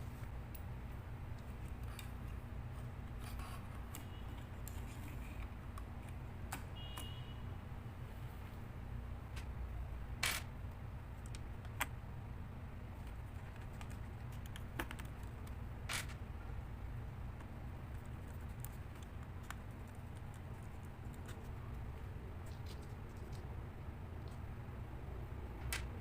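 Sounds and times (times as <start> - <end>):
steady low hum: 0.0 - 26.0.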